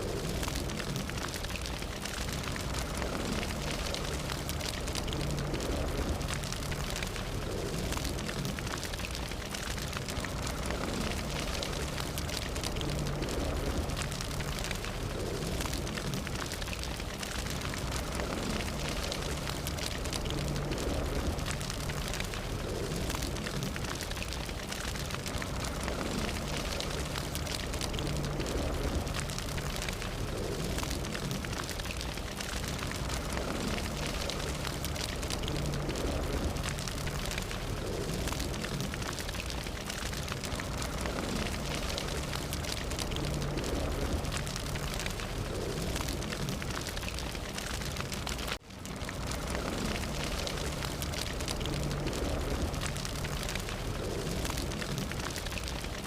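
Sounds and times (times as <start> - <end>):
fire crackling: 0.0 - 56.0
low fire rumble: 0.0 - 56.0.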